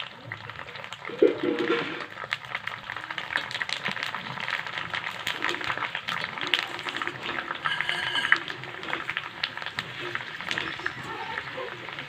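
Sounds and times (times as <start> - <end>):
dense crackling: 0.0 - 12.0.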